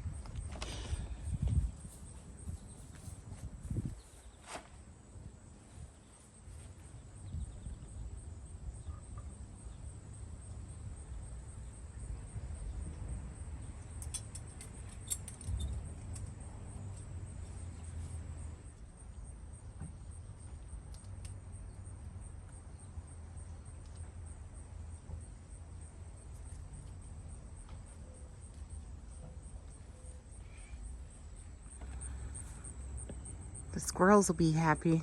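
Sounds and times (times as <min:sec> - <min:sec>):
crickets trilling: 0:00.0 - 0:35.0
light clicks and rattles: 0:13.8 - 0:17.1.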